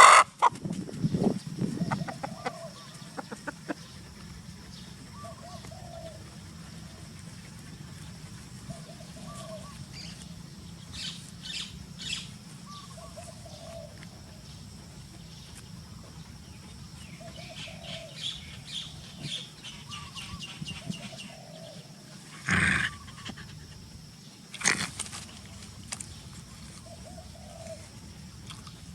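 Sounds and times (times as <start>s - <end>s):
small birds chirping: 1.0s - 28.9s
dove cooing: 1.6s - 15.2s, 16.1s - 23.6s, 26.4s - 28.1s.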